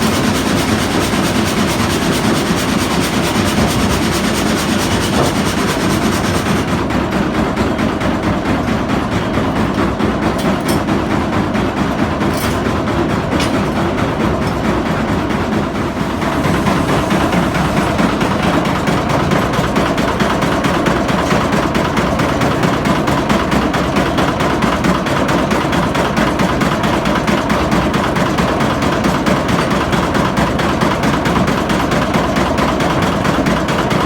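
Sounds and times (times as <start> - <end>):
hiss: 15.9 - 19.2.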